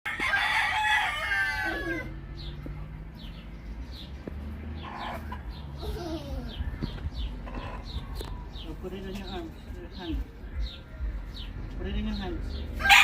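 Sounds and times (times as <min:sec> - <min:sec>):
rooster crowing: 0:00.1 - 0:02.2, 0:12.8 - 0:13.0
hen clucking: 0:04.8 - 0:05.7, 0:07.2 - 0:08.4.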